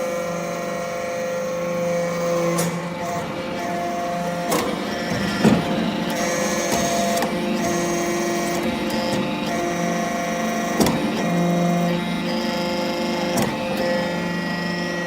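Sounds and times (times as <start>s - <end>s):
hydraulic press humming: 0.1s - 15.0s.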